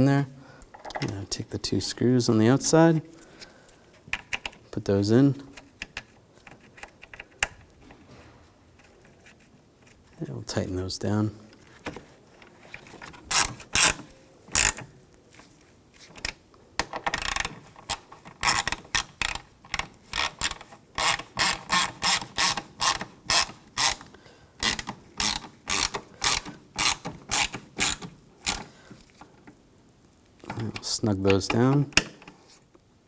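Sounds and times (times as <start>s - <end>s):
ratchet wrench clicking: 14.6s - 14.8s, 20.2s - 24.0s, 24.6s - 28.7s.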